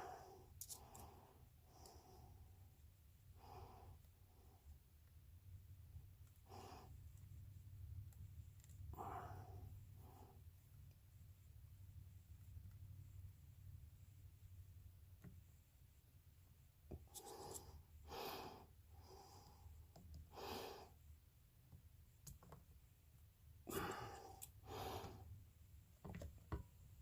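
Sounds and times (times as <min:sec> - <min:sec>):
low steady hum: 0:00.0 - 0:27.0
short breaths close to microphone: 0:23.7 - 0:25.3.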